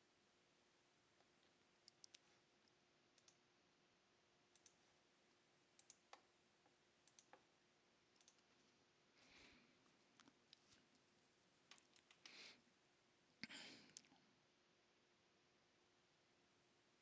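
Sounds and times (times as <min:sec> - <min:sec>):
computer mouse clicks: 0:01.2 - 0:03.4, 0:04.5 - 0:04.8, 0:05.7 - 0:06.3, 0:07.0 - 0:07.5, 0:08.1 - 0:08.5, 0:11.7 - 0:12.4.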